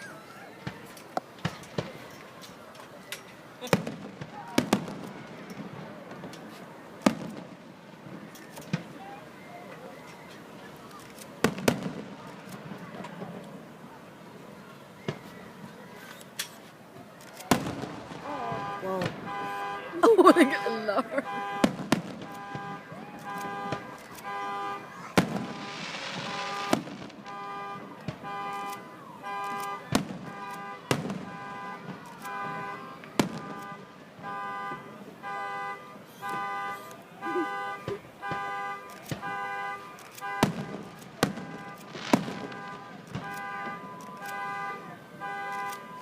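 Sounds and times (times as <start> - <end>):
fireworks bangs and crackling: 0.6 - 35.4, 36.0 - 46.0
car alarm beeping: 18.2 - 46.0.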